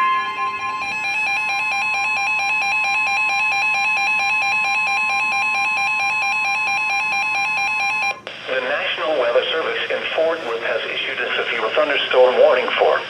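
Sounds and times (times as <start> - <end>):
two-tone electronic alarm: 0.0 - 8.2.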